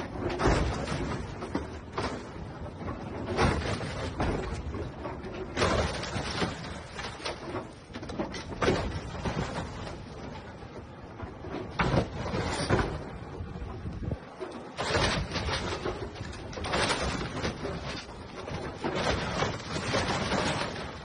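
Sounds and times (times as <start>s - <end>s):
heavy machinery: 0.0s - 21.0s
sheet metal crunching and scraping: 0.0s - 21.0s.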